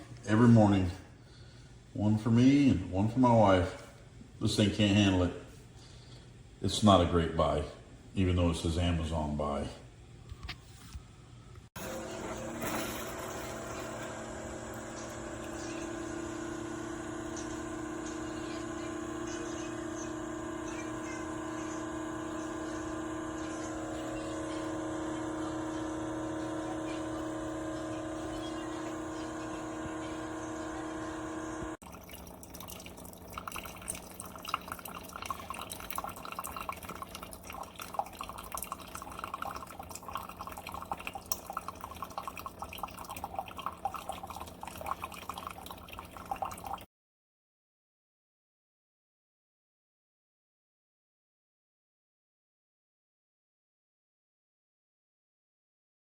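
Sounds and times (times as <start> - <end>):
coffee maker hum: 0.0 - 9.4, 10.3 - 46.9
liquid dripping into cup: 31.8 - 46.9.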